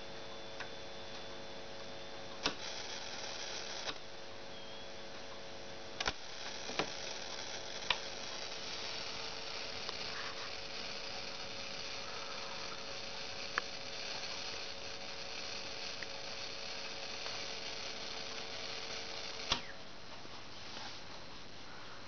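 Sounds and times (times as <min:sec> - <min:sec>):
electrical hum: 0:00.0 - 0:22.0
radio static hiss: 0:00.9 - 0:19.9
sharp clicks: 0:06.0 - 0:07.0, 0:19.4 - 0:19.7.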